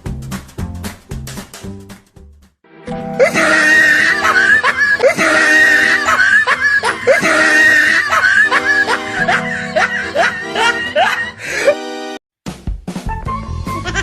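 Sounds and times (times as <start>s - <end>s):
laughter-like voices: 3.2s - 11.8s, 13.8s - 14.0s.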